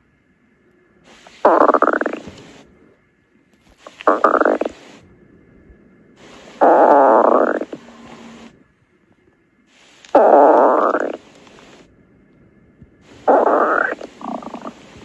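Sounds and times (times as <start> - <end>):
stomach growling: 1.3 - 2.6, 3.7 - 5.0, 6.2 - 8.6, 10.1 - 11.9, 13.0 - 15.0.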